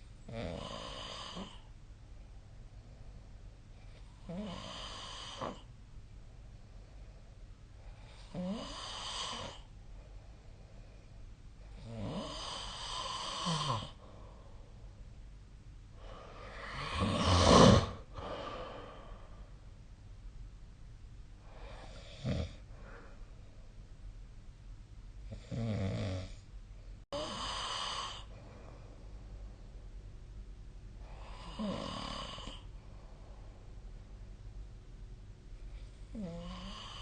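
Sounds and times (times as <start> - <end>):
person snoring: 0.3 - 1.7, 4.2 - 5.7, 8.1 - 9.7, 11.7 - 14.0, 16.0 - 19.4, 27.2 - 28.3, 31.0 - 32.7, 36.1 - 37.0.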